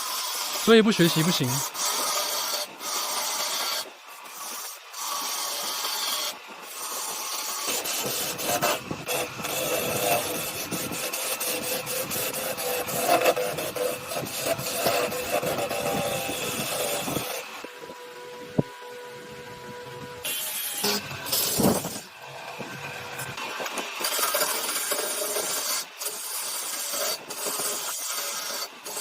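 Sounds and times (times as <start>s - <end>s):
hand tool rasping wood: 0.0s - 18.0s, 20.2s - 29.0s.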